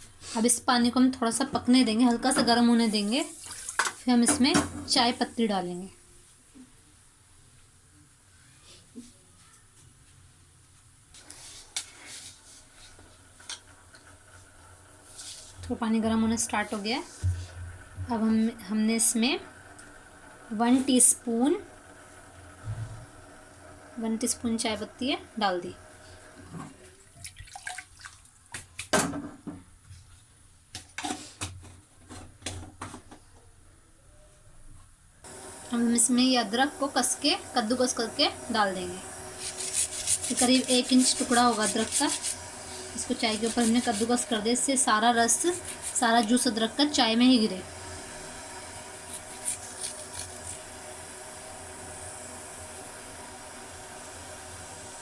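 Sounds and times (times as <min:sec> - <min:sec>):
gas stove burner hiss: 0:35.2 - 0:55.0
ginger grating scrapes: 0:39.3 - 0:47.0, 0:48.2 - 0:50.8.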